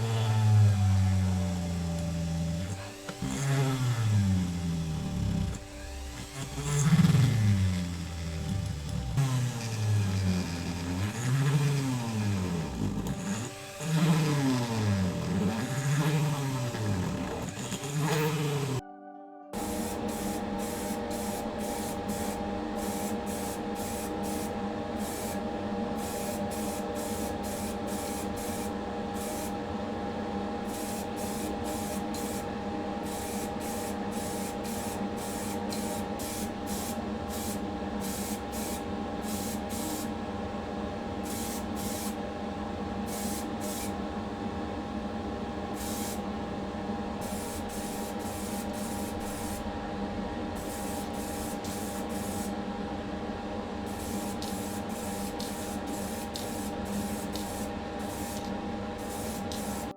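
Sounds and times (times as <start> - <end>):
steady motor hum: 0.0 - 18.8, 19.6 - 59.9
spray hissing: 13.2 - 18.8, 19.6 - 25.4, 26.0 - 29.6, 30.7 - 40.1, 41.2 - 42.2, 43.1 - 44.0, 45.8 - 46.2, 47.2 - 49.6, 50.6 - 52.5, 53.9 - 59.9.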